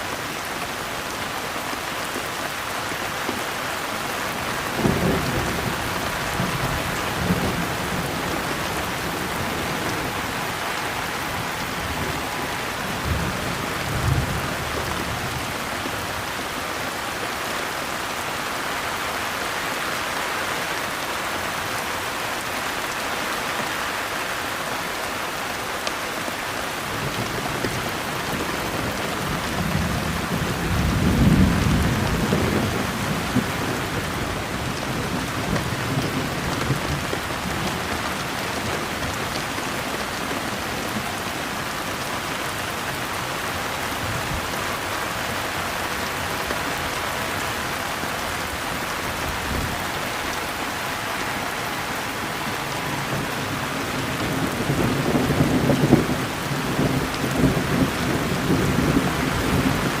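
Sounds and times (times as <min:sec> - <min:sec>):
steady rain falling: 0:00.0 - 1:00.0
low rumble of thunder: 0:27.0 - 0:38.5, 0:52.8 - 1:00.0.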